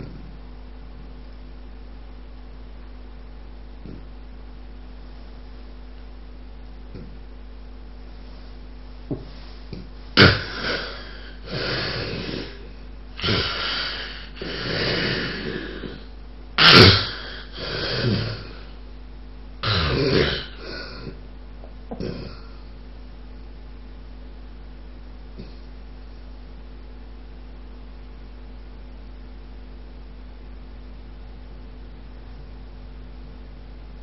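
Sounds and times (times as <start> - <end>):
person gasping: 10.2 - 16.1
loud irregular snoring: 10.2 - 18.7, 19.6 - 21.2, 22.0 - 22.5.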